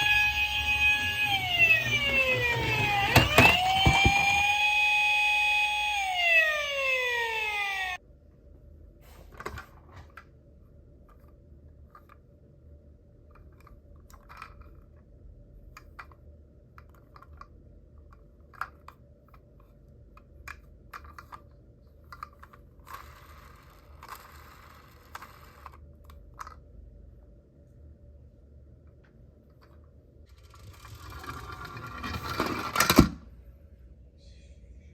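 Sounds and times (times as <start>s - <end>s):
toy electronic siren: 0.0s - 8.0s.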